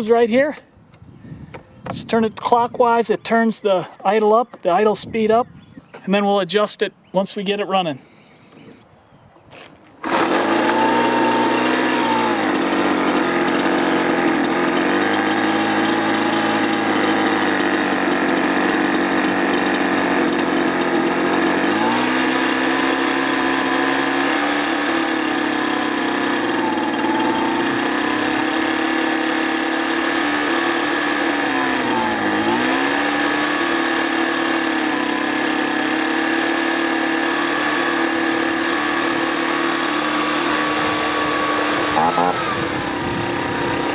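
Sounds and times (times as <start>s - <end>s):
two-stroke engine idling: 10.0s - 43.9s.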